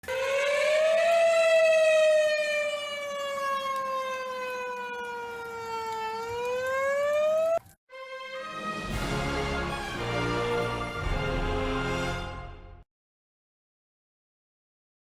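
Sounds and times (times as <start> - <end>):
warning siren wailing: 0.0 - 7.7.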